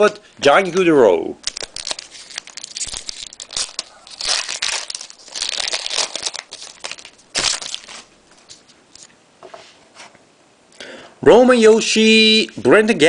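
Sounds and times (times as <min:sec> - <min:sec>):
cards rustling: 0:00.0 - 0:09.1
foil wrapper crinkling: 0:00.6 - 0:09.1.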